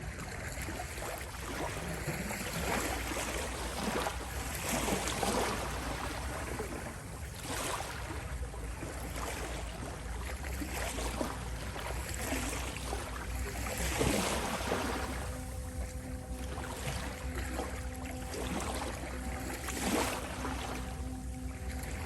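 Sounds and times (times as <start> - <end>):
ocean waves washing in: 1.5 - 22.0
low rumble: 11.3 - 22.0.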